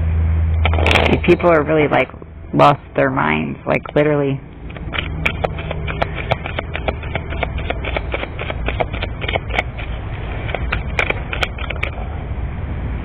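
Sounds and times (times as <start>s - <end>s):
steady low rumble: 0.0s - 13.0s
rapid irregular clicks and taps: 3.8s - 12.0s.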